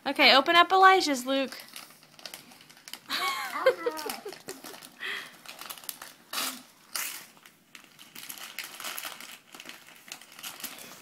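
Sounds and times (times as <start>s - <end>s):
wrapping paper tearing and crinkling: 1.4s - 11.0s.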